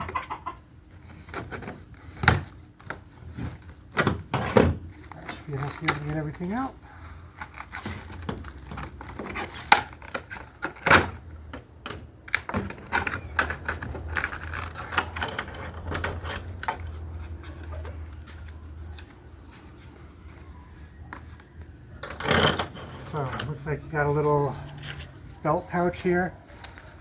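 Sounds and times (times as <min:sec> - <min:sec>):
package rustling and rattling: 0:12.6 - 0:19.1.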